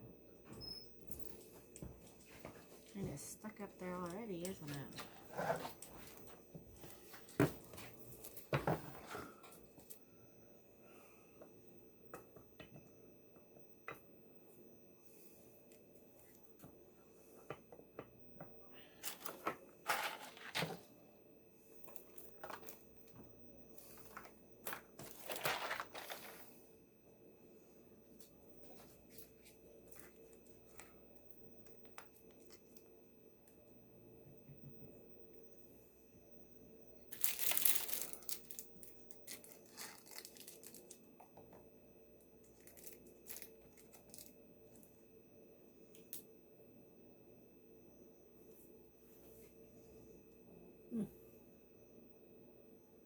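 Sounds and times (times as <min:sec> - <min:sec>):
crinkling rustles: 0:18.9 - 0:20.9, 0:21.8 - 0:23.2, 0:23.8 - 0:26.6, 0:37.1 - 0:41.2, 0:42.4 - 0:44.9.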